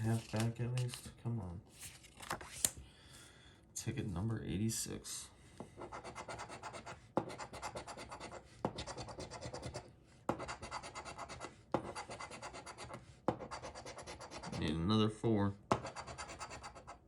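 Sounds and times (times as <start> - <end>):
scratching lottery ticket: 0.0 - 1.1, 5.8 - 14.8, 15.8 - 17.0.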